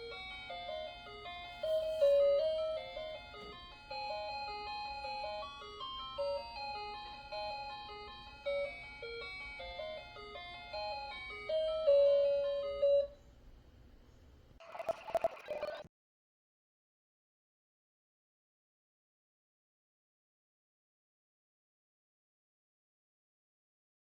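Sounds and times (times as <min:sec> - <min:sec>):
cuckoo clock electronic melody: 0:00.0 - 0:13.2.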